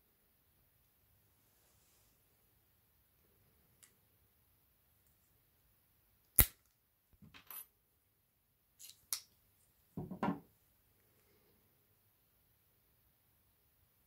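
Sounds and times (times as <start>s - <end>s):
knocks of plastic and metal parts: 10.0s - 10.4s.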